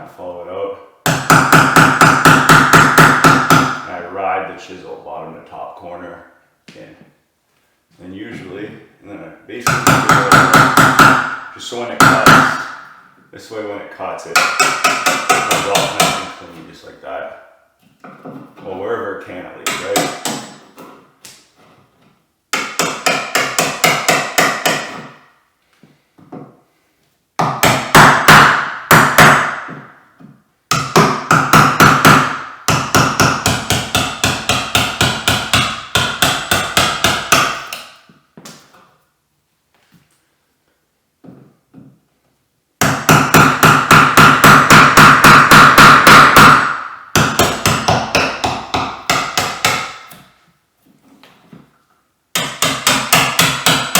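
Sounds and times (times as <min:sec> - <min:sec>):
hammer tapping a wood chisel: 0:01.0 - 0:03.9, 0:09.6 - 0:11.4, 0:12.0 - 0:12.9, 0:14.4 - 0:16.3, 0:19.6 - 0:21.0, 0:22.5 - 0:25.2, 0:27.4 - 0:38.8, 0:42.8 - 0:50.3, 0:52.3 - 0:53.9.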